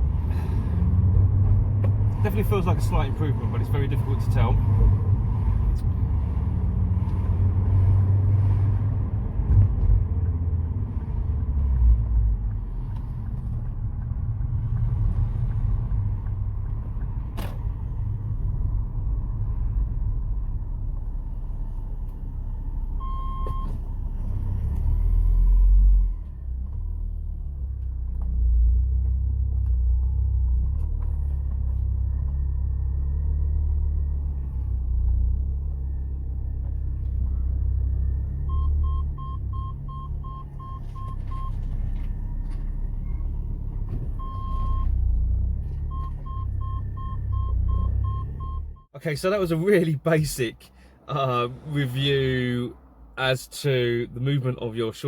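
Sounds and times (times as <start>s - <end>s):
car engine while driving: 0.0s - 55.0s
road rumble: 0.0s - 55.0s
short beep: 23.0s - 23.8s, 44.2s - 45.0s, 45.9s - 48.9s.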